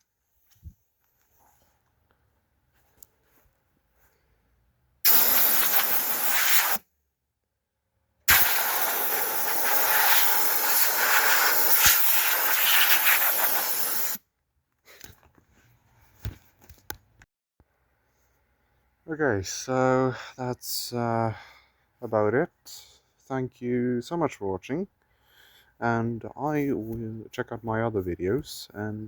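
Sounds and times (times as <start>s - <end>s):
leaf blower blowing air: 5.1s - 6.8s, 8.3s - 14.2s.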